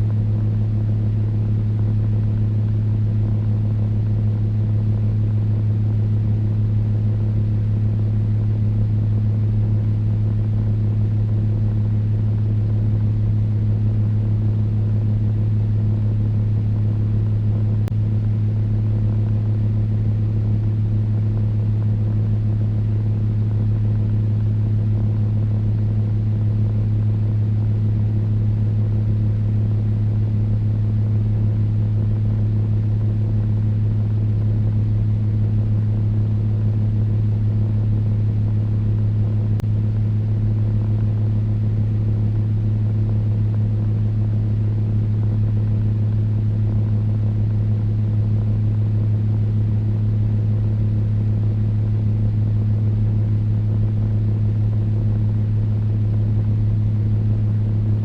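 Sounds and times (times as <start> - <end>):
electric fan running: 0.0 - 58.0.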